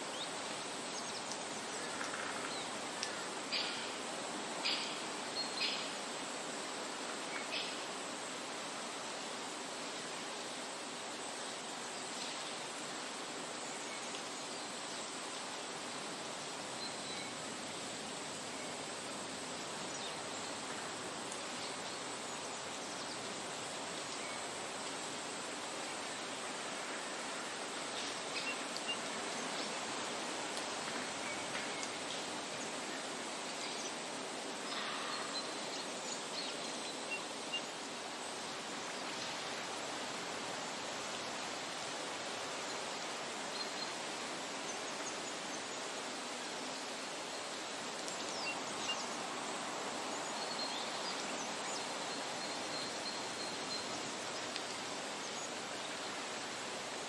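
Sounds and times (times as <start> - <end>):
faint bird chirps: 34.6 - 37.7.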